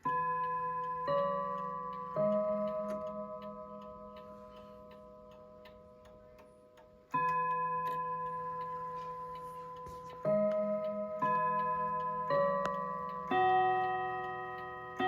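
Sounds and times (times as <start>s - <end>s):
clock ticking: 0.0s - 15.0s
mantel clock chiming on rods: 0.0s - 15.0s.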